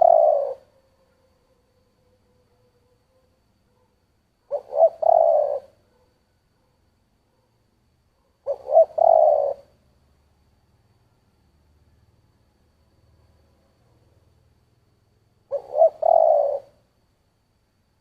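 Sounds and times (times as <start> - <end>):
dove cooing: 0.0 - 6.1, 8.3 - 9.8, 15.4 - 16.9.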